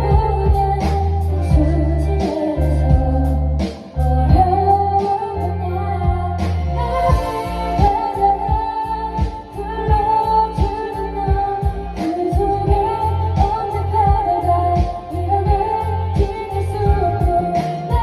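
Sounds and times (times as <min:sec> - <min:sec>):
bass and drum backing track: 0:00.0 - 0:18.0
woman singing a pop ballad: 0:00.0 - 0:18.0.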